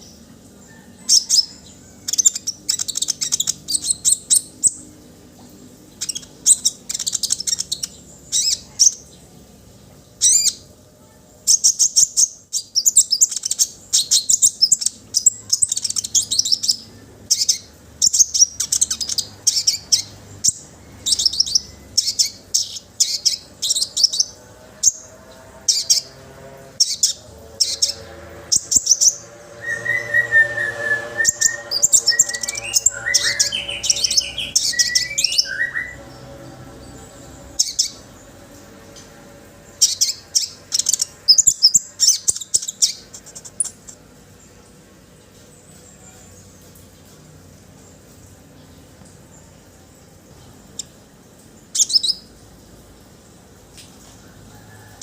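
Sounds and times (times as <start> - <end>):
songbird chirping: 0.0 - 55.0.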